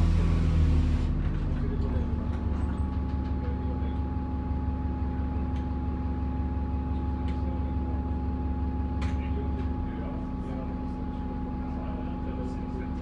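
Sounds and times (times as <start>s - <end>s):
turbo whine: 0.0s - 5.2s
bus diesel engine droning: 0.0s - 13.0s.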